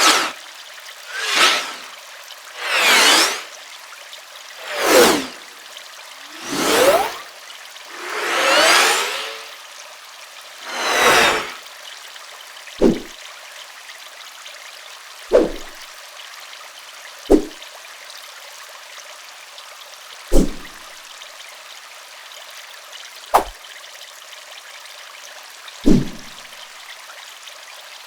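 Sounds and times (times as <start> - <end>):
whoosh sound effects: 0.0 - 0.4, 1.1 - 1.9, 2.6 - 3.5, 4.6 - 5.5, 6.3 - 7.3, 7.9 - 9.6, 10.6 - 11.6, 12.8 - 13.1, 15.3 - 15.8, 17.3 - 17.6, 20.3 - 20.8, 25.9 - 26.4.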